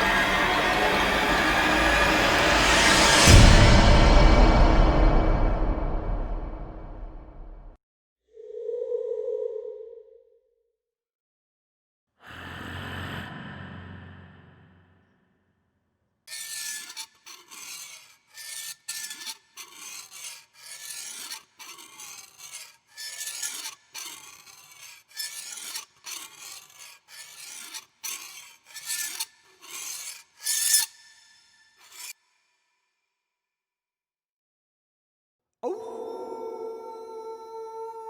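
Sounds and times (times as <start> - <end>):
rasping strokes: 0.0 - 5.6, 16.3 - 32.5.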